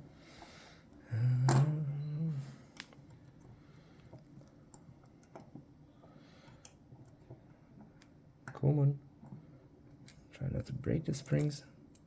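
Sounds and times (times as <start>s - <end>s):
person humming: 1.1s - 2.7s.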